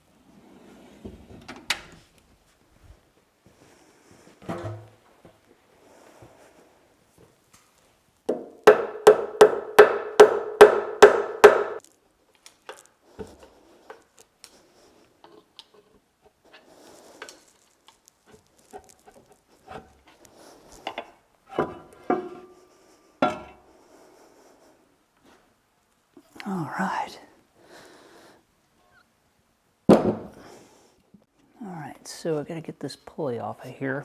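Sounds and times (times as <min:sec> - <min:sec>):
hammer striking metal: 0:08.3 - 0:11.8.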